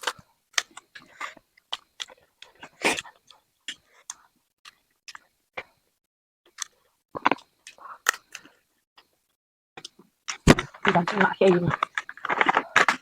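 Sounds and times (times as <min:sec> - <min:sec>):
mouth clicks and smacks chewing: 0:00.6 - 0:05.3.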